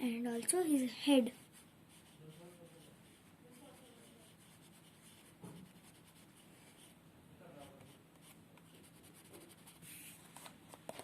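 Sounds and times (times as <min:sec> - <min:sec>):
colouring stick scratching paper: 0:01.1 - 0:07.0, 0:07.6 - 0:10.2.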